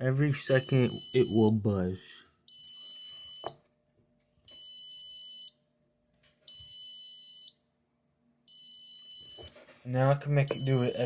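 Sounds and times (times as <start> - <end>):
high-pitched buzzer beeps: 0.5 - 1.6, 10.5 - 11.0.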